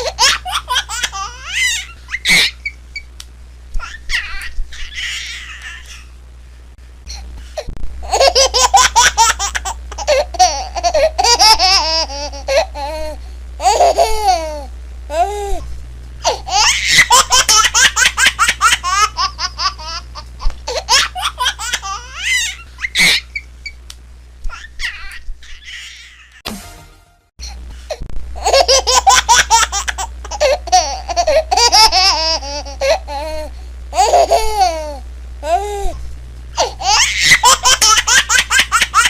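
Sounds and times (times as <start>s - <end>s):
baby laughing: 0.0s - 2.8s, 3.8s - 6.1s, 8.0s - 15.3s, 16.2s - 23.5s, 28.4s - 35.6s, 36.6s - 39.0s.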